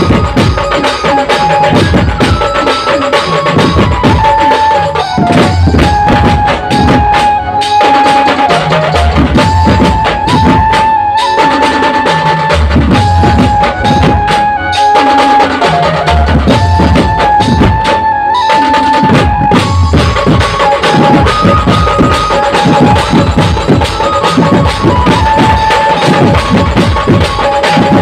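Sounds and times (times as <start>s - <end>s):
band playing loud music: 0.0s - 28.0s
high long-held melody: 0.0s - 28.0s
dense drumming: 5.0s - 7.4s, 8.4s - 11.0s, 12.4s - 18.1s, 19.0s - 28.0s.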